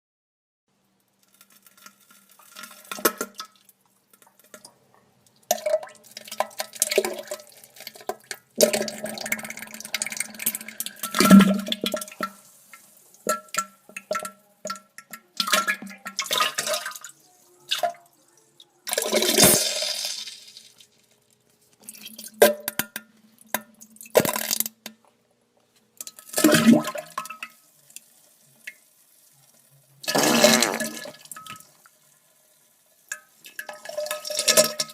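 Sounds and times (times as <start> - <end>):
liquid splattering into toilet water: 1.4 - 4.8, 5.4 - 12.4, 13.2 - 17.1, 18.9 - 20.9, 26.0 - 27.6, 30.0 - 31.7
wet sputtering farts: 30.1 - 31.2.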